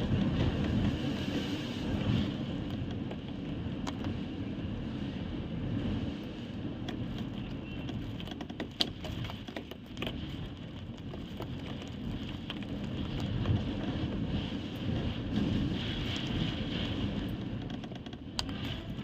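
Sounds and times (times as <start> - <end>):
storm wind buffeting microphone: 0.0 - 19.0.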